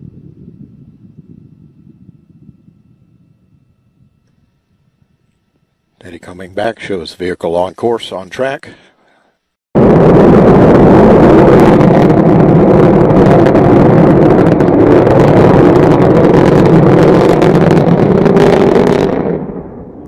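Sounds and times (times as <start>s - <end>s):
rocket engine roar: 9.8s - 20.0s.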